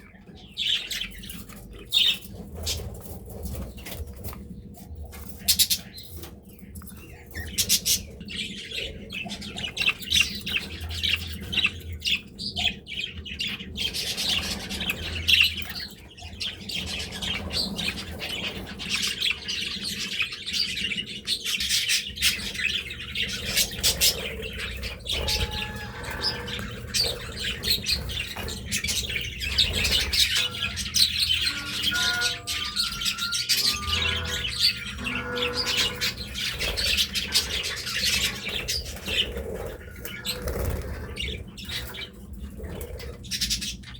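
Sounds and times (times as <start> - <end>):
budgerigars chattering: 6.9 - 43.9.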